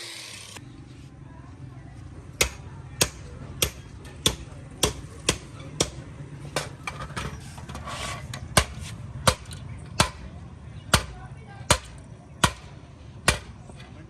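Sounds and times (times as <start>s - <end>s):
scraping rustle: 7.0s - 9.0s.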